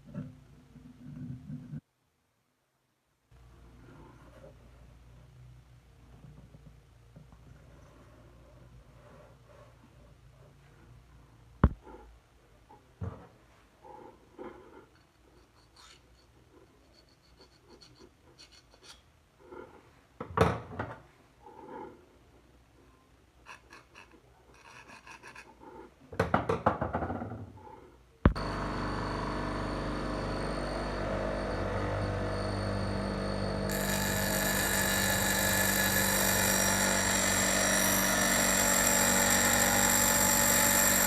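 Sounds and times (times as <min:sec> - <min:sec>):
tools knocking and scraping: 0:11.6 - 0:11.8
bench grinder motor hum: 0:28.3 - 0:41.0.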